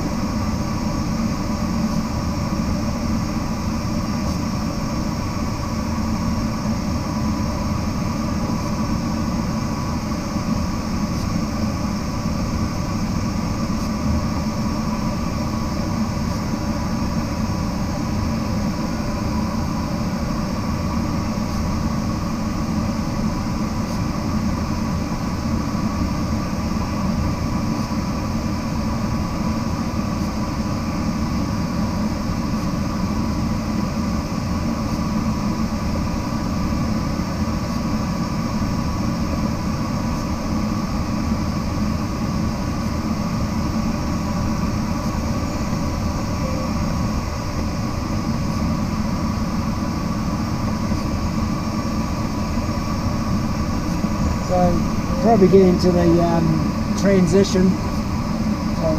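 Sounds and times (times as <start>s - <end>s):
airflow over glider: 0.0s - 55.8s
faint steady tones: 46.3s - 47.4s.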